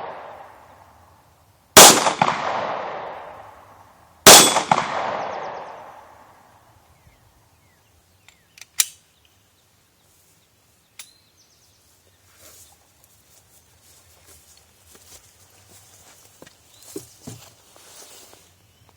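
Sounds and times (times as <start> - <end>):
pistol shot echo: 0.0 - 0.6, 1.8 - 3.6, 4.3 - 6.3.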